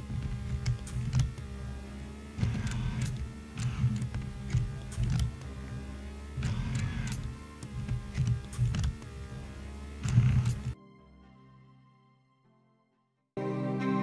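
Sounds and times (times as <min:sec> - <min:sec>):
motor whirring: 0:00.0 - 0:10.8
sharp mechanical clicks: 0:00.0 - 0:10.8
background music: 0:10.0 - 0:14.0.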